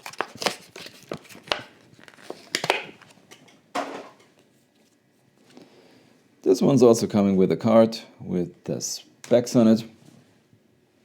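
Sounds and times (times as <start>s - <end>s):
plastic packaging crinkling: 0.0s - 3.4s.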